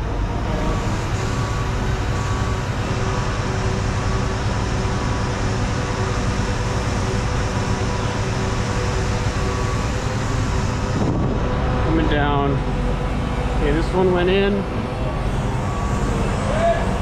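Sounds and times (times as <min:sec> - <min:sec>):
crane diesel engine under load: 0:00.0 - 0:17.0.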